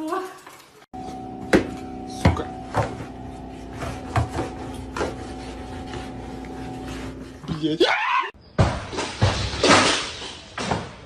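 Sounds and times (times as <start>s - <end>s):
steady hum: 1.0s - 7.5s.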